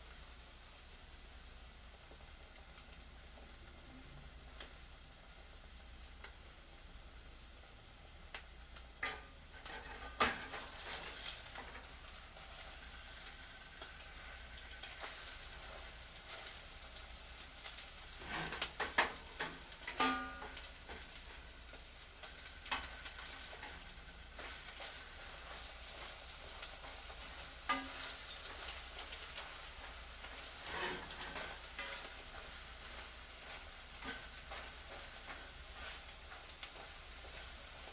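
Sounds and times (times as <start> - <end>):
food sizzling in a pan: 0.0 - 37.9
utensils and dishes clattering: 18.2 - 20.6, 27.7 - 28.4.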